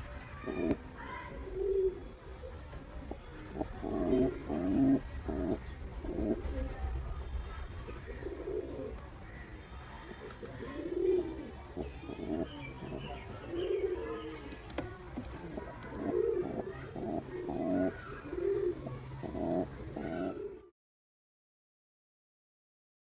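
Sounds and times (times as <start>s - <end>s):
pigeon cooing: 0.0s - 9.1s, 10.1s - 20.7s.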